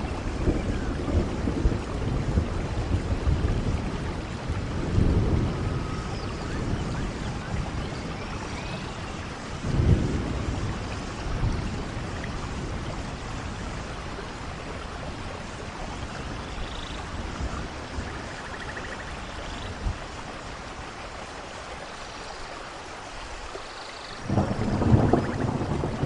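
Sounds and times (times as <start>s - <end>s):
thunder rumbling: 0.0s - 20.3s, 24.2s - 26.0s
steady rain falling: 0.0s - 26.0s.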